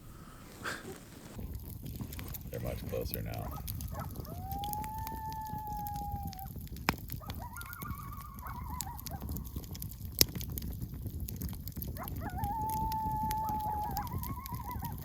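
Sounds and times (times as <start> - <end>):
coyotes howling and yipping: 0.0 - 10.7, 11.4 - 15.0
campfire crackling: 0.0 - 15.0.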